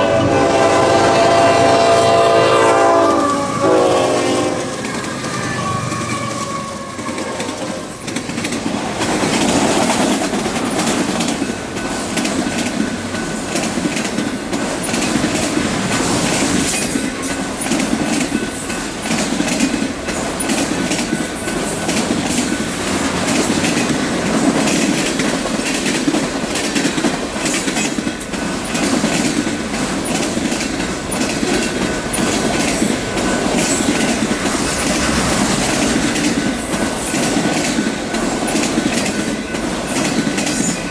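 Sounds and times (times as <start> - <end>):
freight train rumble: 0.0 - 40.9
wheels clickety-clack over rail joints: 2.8 - 40.9
faint high wheel squeal: 4.7 - 8.3.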